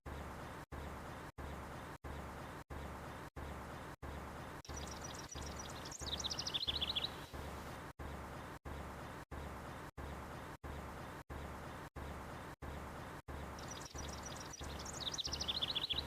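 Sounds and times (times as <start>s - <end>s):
background hiss and hum: 0.1s - 16.0s
songbird trill: 4.1s - 7.7s, 13.3s - 16.0s.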